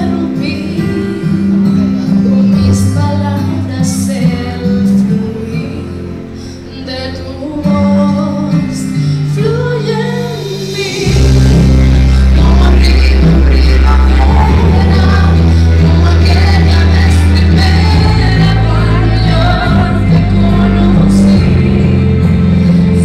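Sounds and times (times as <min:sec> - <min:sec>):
guitar and bass: 0:00.0 - 0:23.0
worship song singing: 0:00.0 - 0:23.0
full band with heavy bass: 0:08.8 - 0:23.0.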